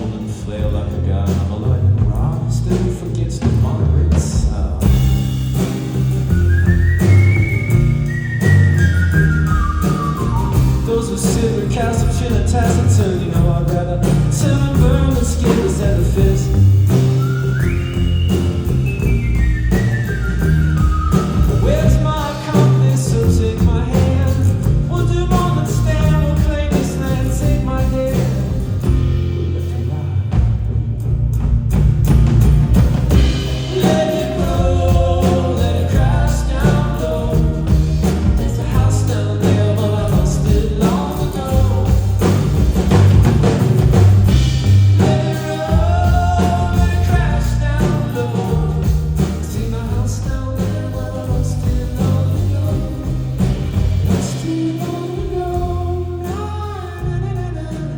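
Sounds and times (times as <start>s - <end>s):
bass line: 0.0s - 57.9s
drums: 0.0s - 57.9s.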